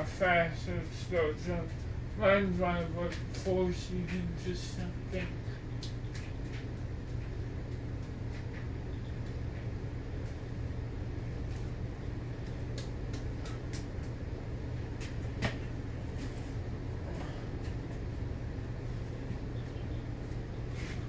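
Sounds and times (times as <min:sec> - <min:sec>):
ceiling fan running: 0:00.0 - 0:21.0.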